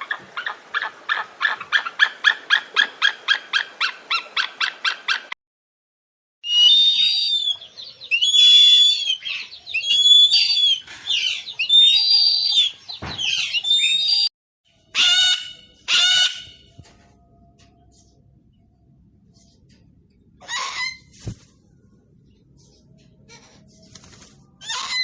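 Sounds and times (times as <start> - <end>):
harsh bird calls: 6.5 - 16.7, 22.2 - 25.0.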